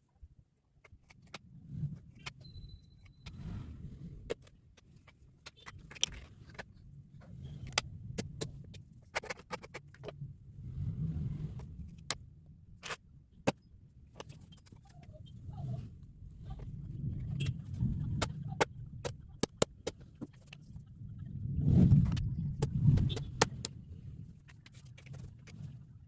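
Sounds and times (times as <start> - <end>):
low uneven rumble: 10.2 - 12.0, 14.0 - 19.4.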